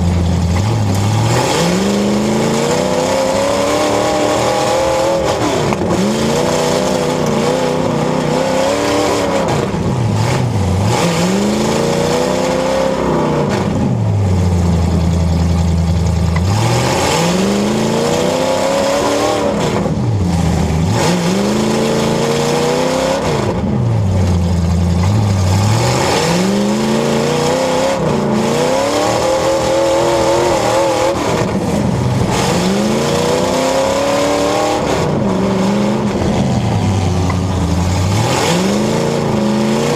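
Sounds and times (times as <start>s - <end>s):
car engines revving hard: 0.0s - 39.9s
loud noisy din: 28.0s - 39.9s.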